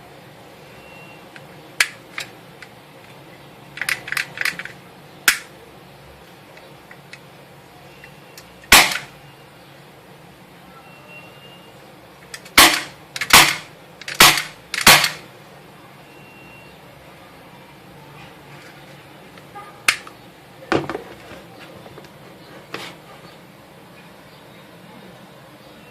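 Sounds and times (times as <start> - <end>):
airsoft pistol shots: 8.7 - 9.1, 12.6 - 15.2.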